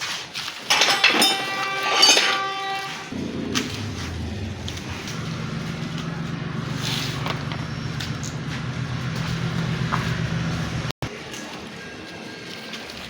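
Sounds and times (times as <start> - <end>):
motor droning: 3.1 - 11.0.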